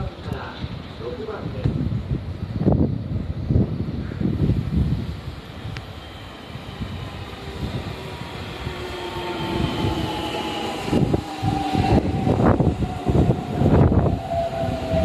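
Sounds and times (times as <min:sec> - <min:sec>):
wind buffeting microphone: 0:00.0 - 0:15.0
electric train motor whine: 0:04.3 - 0:15.0.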